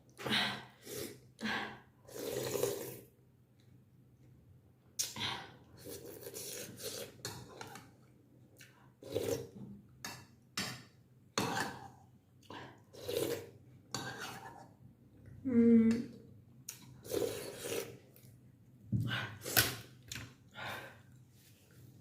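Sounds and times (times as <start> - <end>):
person humming: 15.4 - 16.1.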